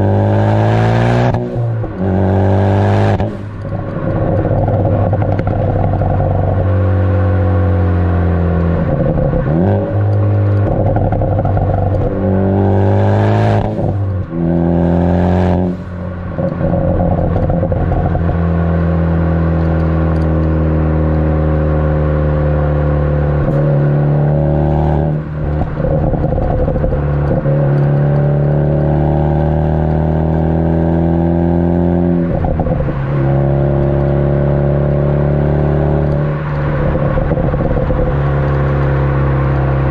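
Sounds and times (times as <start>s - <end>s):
car engine and exhaust driving: 0.0s - 39.9s
exhaust crackling pops: 3.1s - 6.7s, 8.5s - 12.2s, 15.6s - 18.7s, 25.0s - 28.3s, 36.0s - 39.9s
gear changes: 24.9s - 28.6s.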